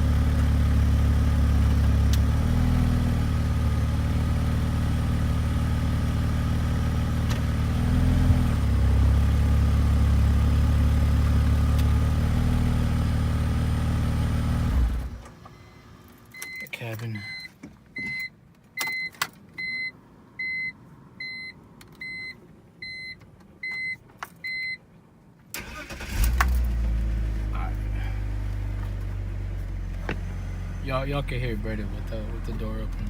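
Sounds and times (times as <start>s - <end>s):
car engine idling: 25.6s - 33.0s.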